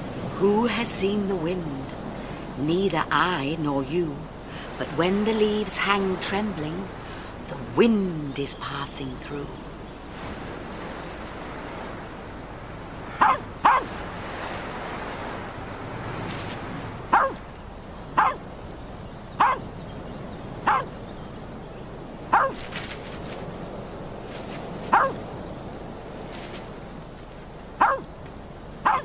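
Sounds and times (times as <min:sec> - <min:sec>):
wind rushing: 0:00.0 - 0:27.7
dog barking: 0:13.2 - 0:14.0, 0:17.1 - 0:17.4, 0:18.2 - 0:18.4, 0:19.4 - 0:19.7, 0:20.7 - 0:21.0, 0:22.3 - 0:22.6, 0:24.9 - 0:25.2, 0:27.8 - 0:28.1.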